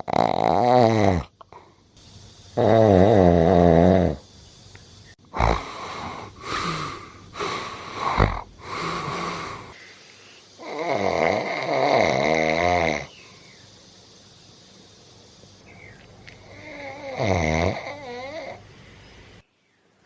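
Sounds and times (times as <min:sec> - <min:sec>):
man snoring: 0:00.0 - 0:01.4, 0:02.6 - 0:04.2, 0:05.3 - 0:09.8, 0:10.6 - 0:13.1, 0:16.5 - 0:18.6.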